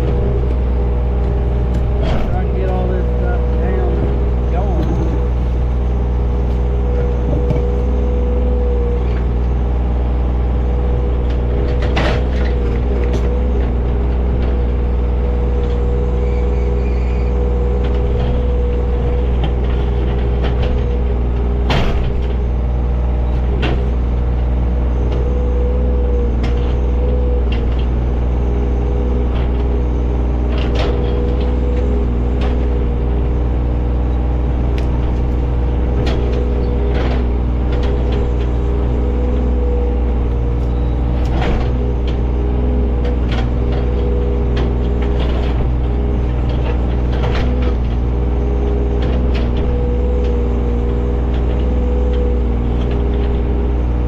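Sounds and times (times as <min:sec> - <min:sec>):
excavator diesel engine running: 0:00.0 - 0:54.0
steady whine: 0:00.0 - 0:54.0.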